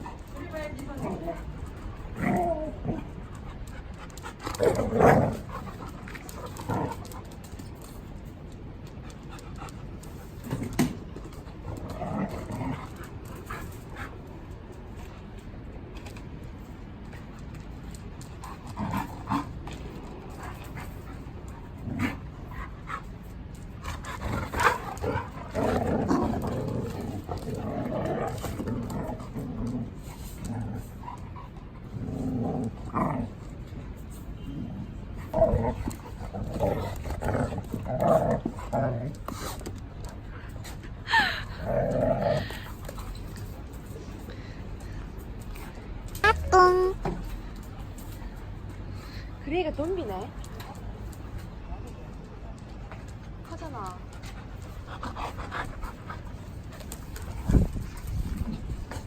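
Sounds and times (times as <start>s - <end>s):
dogs growling: 0.0s - 7.9s, 9.1s - 14.3s, 18.2s - 33.9s, 34.5s - 46.2s, 54.1s - 59.0s
dogs panting: 0.0s - 14.9s, 17.2s - 32.0s, 52.7s - 59.0s.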